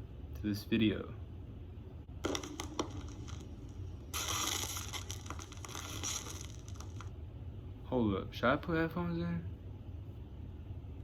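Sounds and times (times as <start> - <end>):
rustling and scraping: 2.2 - 7.1.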